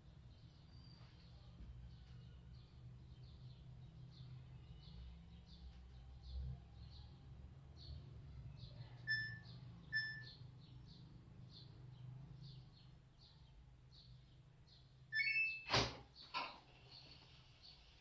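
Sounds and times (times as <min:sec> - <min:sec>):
short button beeps: 0:15.2 - 0:15.7.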